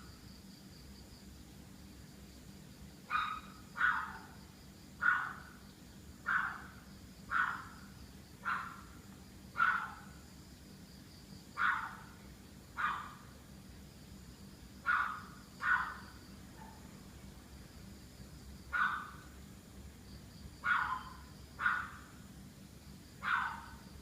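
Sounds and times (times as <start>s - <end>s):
dog barking: 3.1s - 4.4s, 5.0s - 5.5s, 6.3s - 7.8s, 8.4s - 8.9s, 9.6s - 10.1s, 11.6s - 12.2s, 12.8s - 13.2s, 14.8s - 16.0s, 18.7s - 19.2s, 20.6s - 22.0s, 23.2s - 23.8s.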